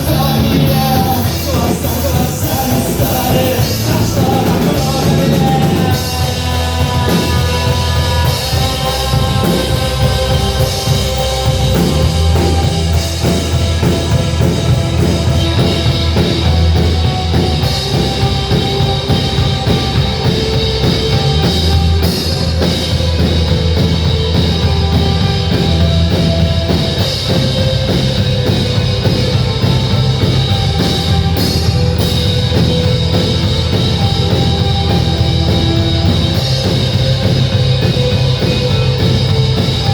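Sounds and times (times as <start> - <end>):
rock music with drums and guitar: 0.0 - 39.9.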